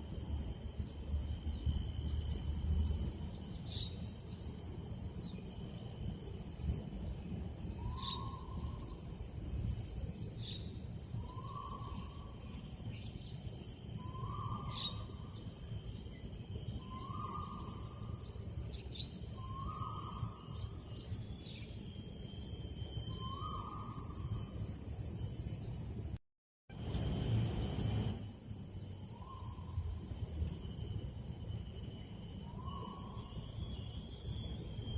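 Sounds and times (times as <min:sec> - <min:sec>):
small birds chirping: 0:00.0 - 0:25.9.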